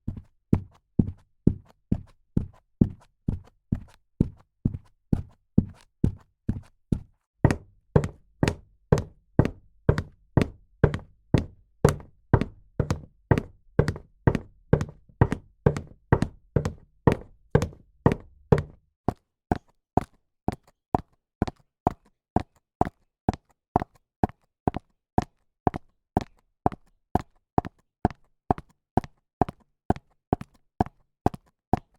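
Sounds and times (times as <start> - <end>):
high heels clicking: 7.0 - 18.8.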